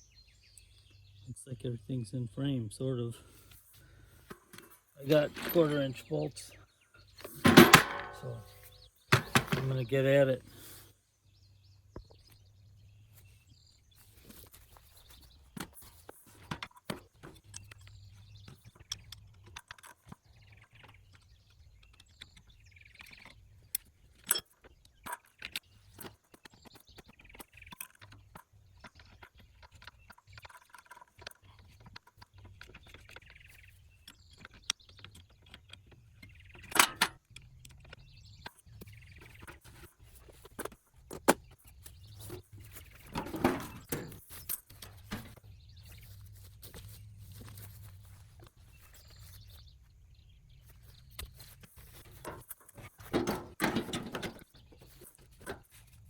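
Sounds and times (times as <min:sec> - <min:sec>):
tools and metal parts clinking: 0:04.3 - 0:06.1, 0:07.2 - 0:10.0, 0:23.0 - 0:28.4, 0:36.5 - 0:38.6, 0:39.3 - 0:49.6, 0:51.2 - 0:56.0.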